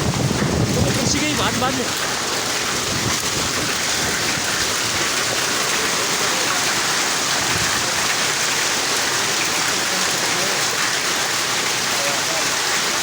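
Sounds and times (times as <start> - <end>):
heavy rain falling: 0.0 - 13.0.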